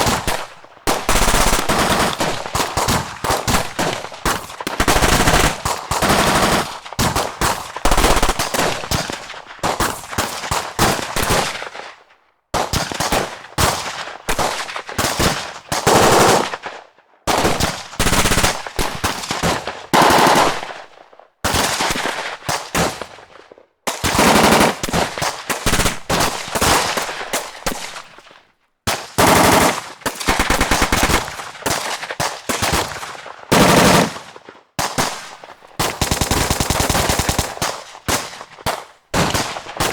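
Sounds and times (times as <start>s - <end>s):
automatic gunfire bursts: 0.0s - 11.6s, 14.4s - 16.7s, 17.3s - 20.9s, 23.9s - 27.9s, 29.0s - 39.9s
single gunshots: 20.0s - 20.8s.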